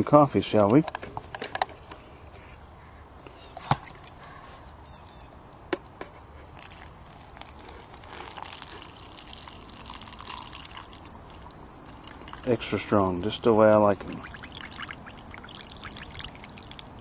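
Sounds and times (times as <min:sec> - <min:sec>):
coffee trickling into a mug: 0:06.5 - 0:13.0, 0:14.0 - 0:17.0.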